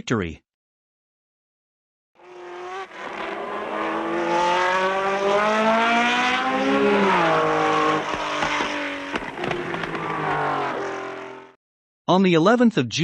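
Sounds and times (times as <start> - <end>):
racing car engine accelerating: 2.2 - 11.6
engine pops: 7.9 - 10.4.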